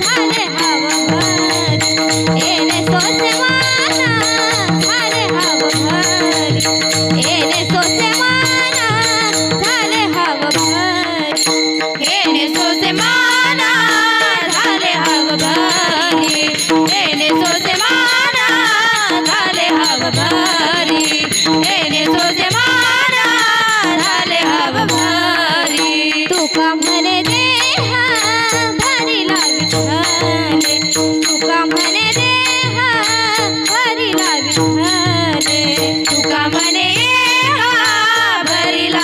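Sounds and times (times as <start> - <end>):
harmonium drone: 0.0 - 39.0
jingling hand cymbals: 0.0 - 39.0
woman singing devotional melody: 0.0 - 39.0.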